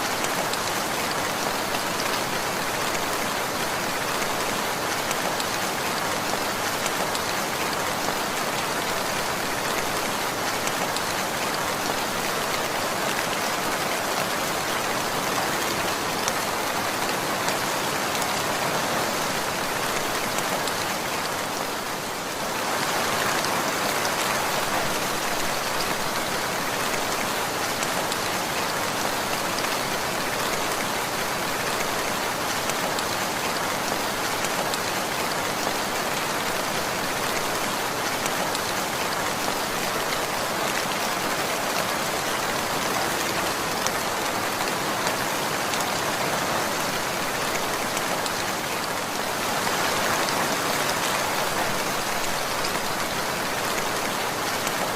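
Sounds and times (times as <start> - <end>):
steady rainfall: 0.0 - 54.9.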